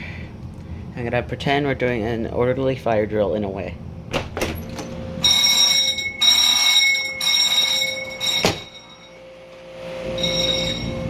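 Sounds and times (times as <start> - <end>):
fire alarm high-pitched tones: 5.1 - 11.0.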